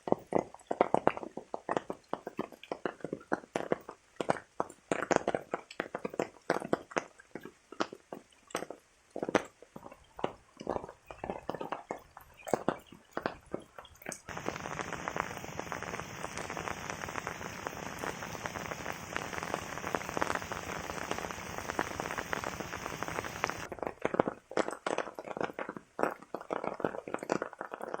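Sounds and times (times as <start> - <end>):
heavy rain hiss: 14.3 - 23.7
large raindrops splashing: 14.3 - 23.7.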